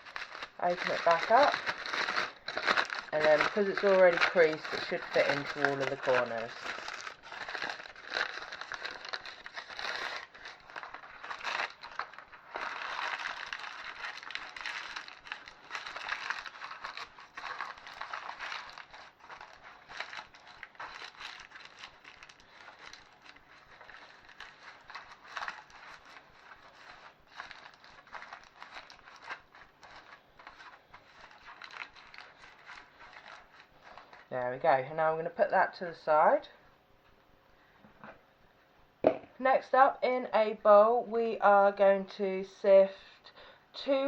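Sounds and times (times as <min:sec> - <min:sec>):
baking paper crinkling: 0:00.0 - 0:34.4.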